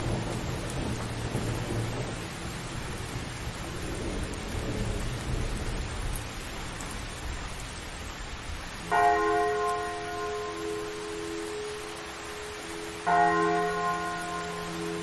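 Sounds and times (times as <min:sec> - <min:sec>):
rushing hiss with low rumble: 0:00.0 - 0:15.0
large church bell strike: 0:08.9 - 0:11.7, 0:13.0 - 0:15.0.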